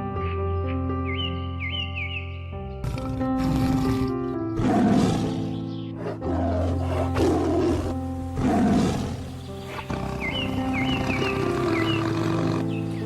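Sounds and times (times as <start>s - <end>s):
background music: 0.0s - 13.0s
loud rough animal calls: 6.6s - 13.0s.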